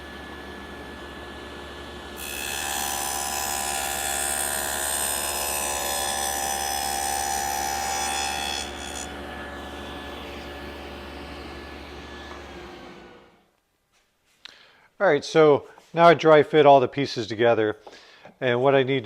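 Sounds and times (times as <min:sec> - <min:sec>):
table saw cutting wood: 0:00.0 - 0:13.4.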